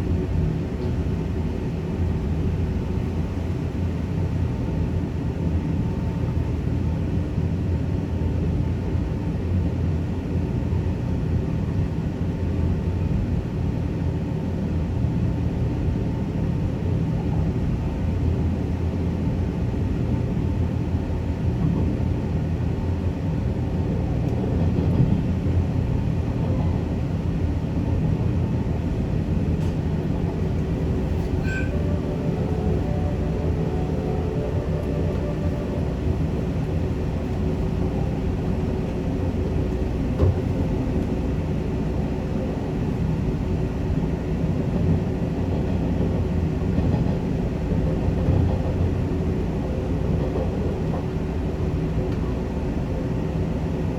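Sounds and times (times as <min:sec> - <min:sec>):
train wheels rumbling on rail: 0:00.0 - 0:53.9.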